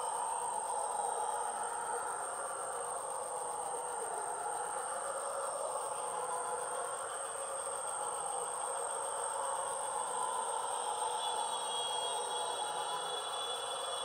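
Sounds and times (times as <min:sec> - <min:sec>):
high-pitched insect trill: 0:00.0 - 0:14.0.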